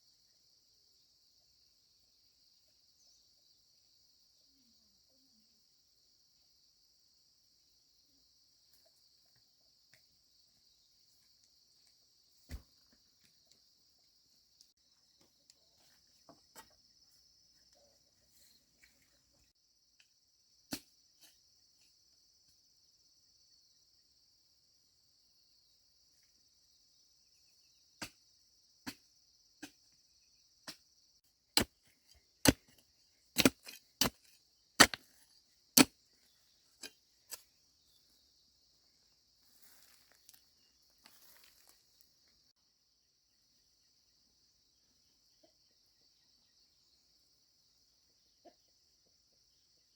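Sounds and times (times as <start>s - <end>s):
insects chirring: 0.0s - 49.9s
tool striking wood: 33.4s - 35.0s.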